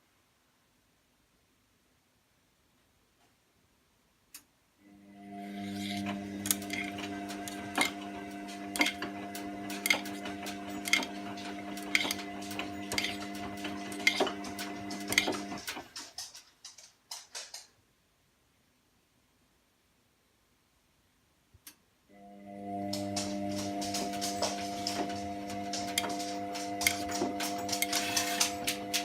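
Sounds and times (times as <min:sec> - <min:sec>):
washing machine motor humming: 0:04.9 - 0:16.0, 0:22.1 - 0:29.0.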